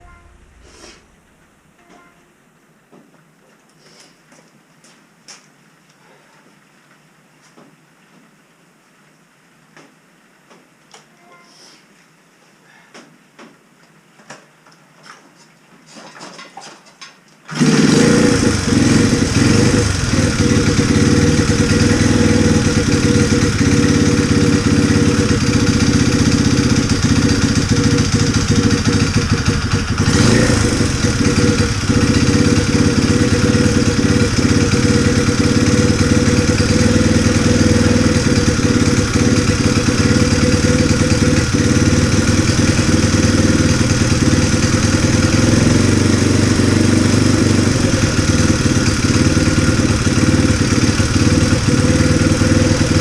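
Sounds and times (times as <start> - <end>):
small engine idling: 17.5 - 53.0.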